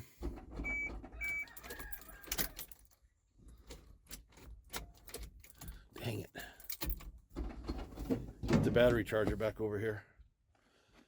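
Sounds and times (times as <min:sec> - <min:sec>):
keys jangling: 0:01.5 - 0:03.0, 0:04.1 - 0:07.2.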